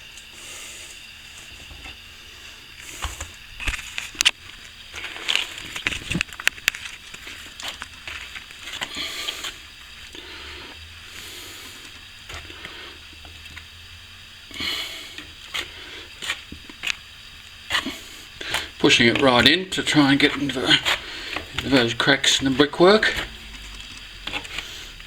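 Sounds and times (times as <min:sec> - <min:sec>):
scraper scraping wet plaster: 0:17.7 - 0:25.0.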